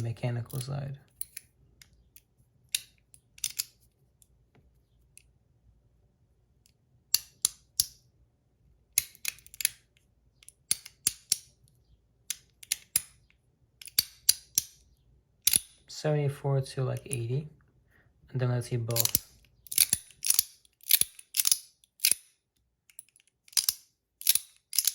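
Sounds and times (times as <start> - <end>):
metal fidget clicking: 19.0 - 22.2, 22.9 - 24.9.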